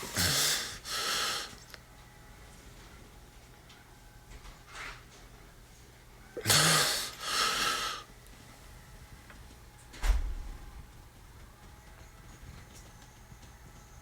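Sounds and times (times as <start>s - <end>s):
man breathing forcefully: 0.0s - 1.6s, 6.4s - 8.1s.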